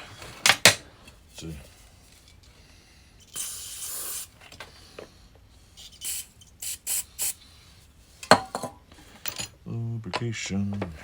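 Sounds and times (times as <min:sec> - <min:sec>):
aerosol spray hissing: 0:03.3 - 0:04.4, 0:05.8 - 0:07.4.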